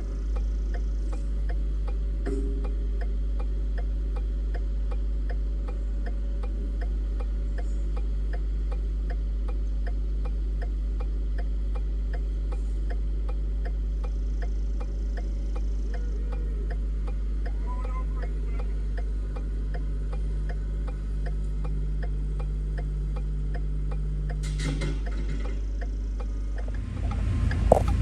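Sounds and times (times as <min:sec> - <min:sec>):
low engine hum: 0:00.0 - 0:28.0
even ticking: 0:25.7 - 0:28.0.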